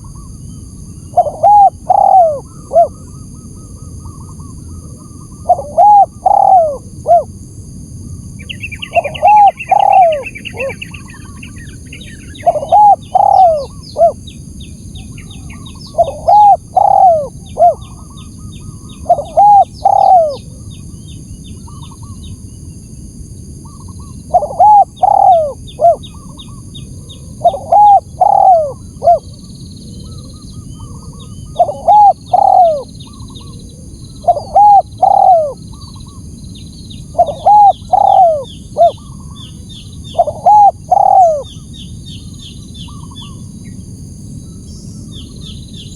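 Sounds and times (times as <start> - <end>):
small birds chirping: 0.0 - 7.3, 8.2 - 22.7, 23.6 - 45.9
dove cooing: 1.1 - 7.3, 8.4 - 14.3, 15.0 - 20.7, 24.0 - 29.4, 30.0 - 36.2, 37.0 - 41.6.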